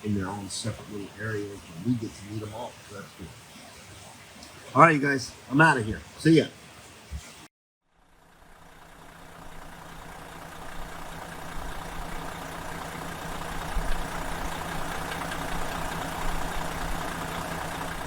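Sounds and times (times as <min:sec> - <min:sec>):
vehicle engine running: 0:07.9 - 0:18.0
constant low hum: 0:08.3 - 0:18.0.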